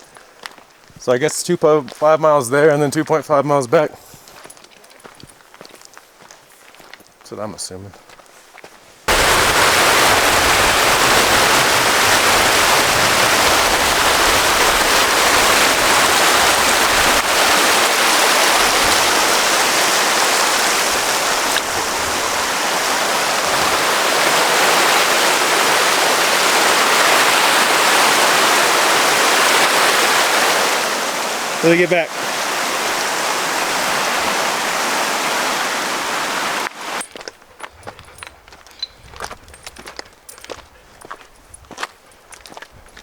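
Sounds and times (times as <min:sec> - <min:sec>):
mountain stream rushing: 0:09.1 - 0:40.6.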